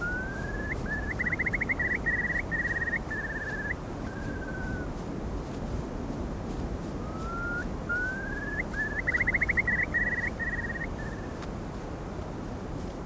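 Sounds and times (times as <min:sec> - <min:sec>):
bird whistling and trilling: 0:00.0 - 0:04.9, 0:07.1 - 0:11.3.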